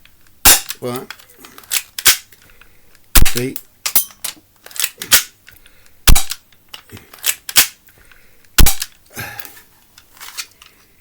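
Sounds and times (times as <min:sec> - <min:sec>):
bb pistol clacking: 0:00.4 - 0:09.0.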